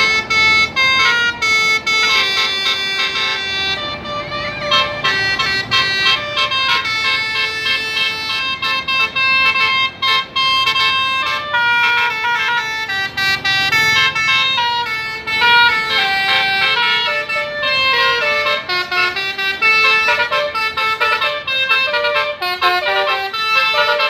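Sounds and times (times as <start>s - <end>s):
bus musical air horn tune: 0.0s - 24.0s.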